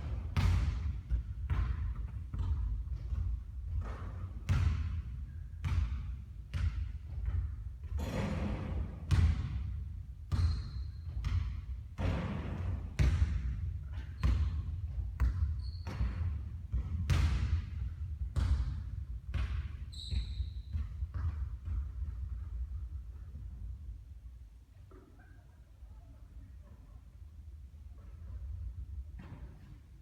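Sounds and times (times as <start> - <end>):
basketball bouncing on court: 0.0 - 23.7
brief high squeak: 19.9 - 20.7.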